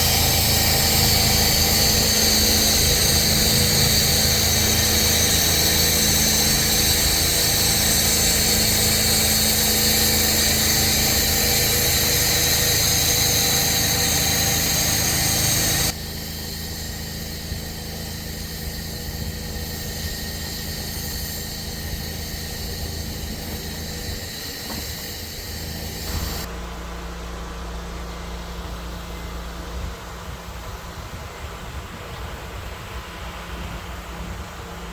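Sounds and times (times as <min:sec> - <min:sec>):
hissing water spray: 0:00.0 - 0:26.5
engine-driven pump running: 0:00.0 - 0:34.9.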